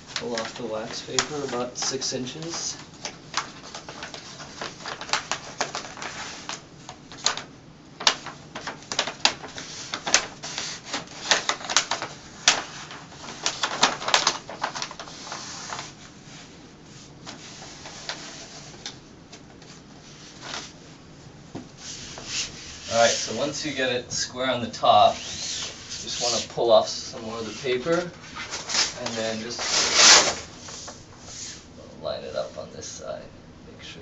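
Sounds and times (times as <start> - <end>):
paper backing crackling as peeled: 0.1 - 16.0, 24.8 - 31.0.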